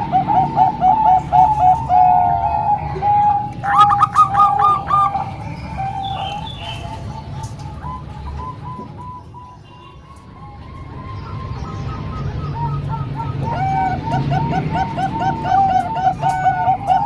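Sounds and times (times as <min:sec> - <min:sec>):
doves cooing: 0:00.0 - 0:17.0
high-pitched bird calling: 0:00.0 - 0:17.0.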